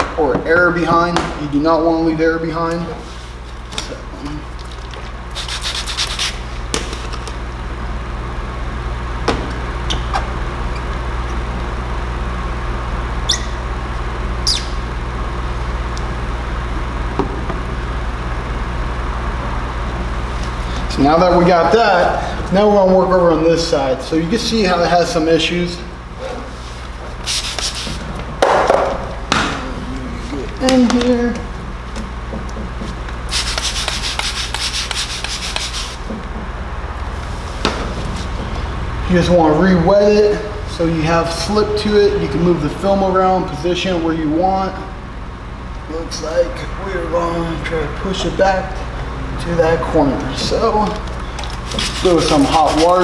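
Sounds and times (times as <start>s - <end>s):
steady low hum: 0.0s - 53.0s
spray bottle misting: 5.3s - 7.3s, 27.2s - 28.0s, 33.3s - 36.0s, 51.3s - 53.0s
squeegee squeaking on film: 13.2s - 13.8s, 14.4s - 14.9s.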